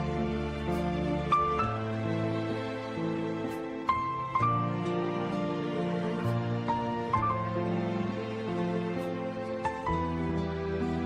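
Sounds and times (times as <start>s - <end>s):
soft slow background music: 0.0s - 11.0s.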